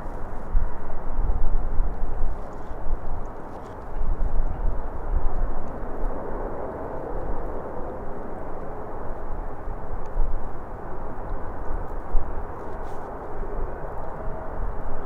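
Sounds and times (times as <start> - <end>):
faint engine whine: 0.0 - 15.0
wind buffeting microphone: 0.0 - 15.0.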